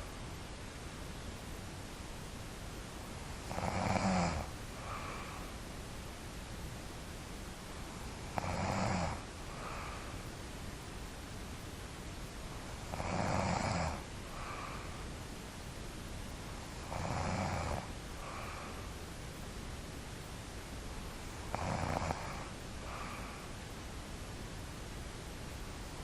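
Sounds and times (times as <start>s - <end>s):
steady background hiss: 0.0s - 26.0s
soft breathing: 3.1s - 5.8s, 7.8s - 10.4s, 13.9s - 15.2s, 16.5s - 19.4s, 20.9s - 23.8s
person snoring: 3.5s - 5.4s, 8.4s - 10.0s, 12.9s - 14.8s, 16.8s - 18.7s, 21.5s - 23.4s.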